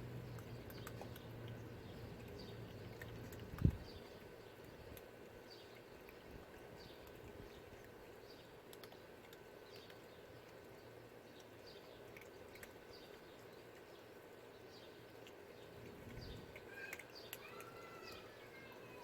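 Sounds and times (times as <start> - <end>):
small bird chirping: 0.2 - 19.0
faint clicks: 15.2 - 18.4.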